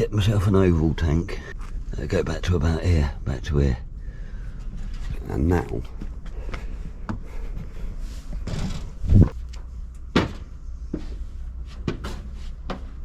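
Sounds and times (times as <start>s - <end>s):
knocks and thumps of parts: 8.4s - 9.4s, 10.1s - 10.6s.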